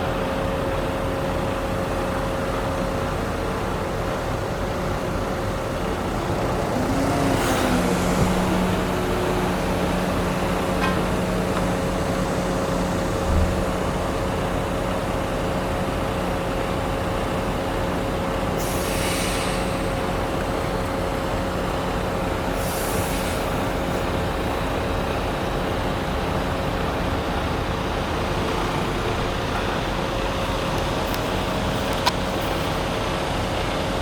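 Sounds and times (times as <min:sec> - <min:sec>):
diesel truck humming: 0:00.0 - 0:34.0
short hisses: 0:18.6 - 0:20.2.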